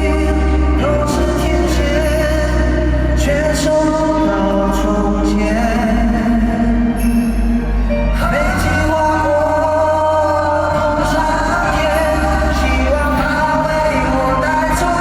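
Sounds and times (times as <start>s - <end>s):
live pop ballad with band: 0.0s - 15.0s.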